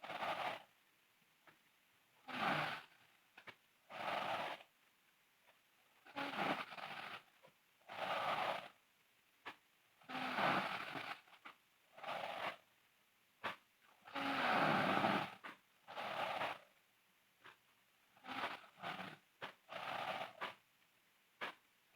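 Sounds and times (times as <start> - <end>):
girl snoring: 0.1 - 0.7, 2.2 - 3.1, 3.9 - 4.7, 6.0 - 7.3, 7.9 - 8.8, 10.0 - 11.4, 12.0 - 12.6, 14.0 - 16.7, 18.1 - 20.6
small clicks between breaths: 1.4 - 1.7, 2.8 - 3.7, 9.4 - 9.6, 10.4 - 12.6, 13.4 - 13.7, 15.2 - 16.8, 17.4 - 20.7, 21.4 - 21.7.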